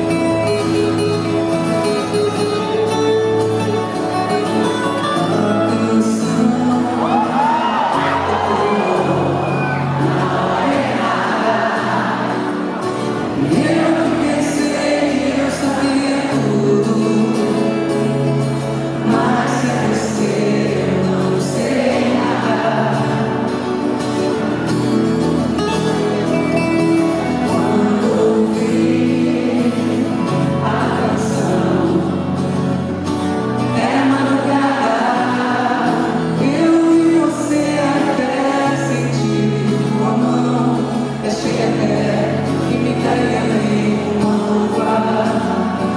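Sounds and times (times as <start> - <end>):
band playing: 0.0 - 45.9.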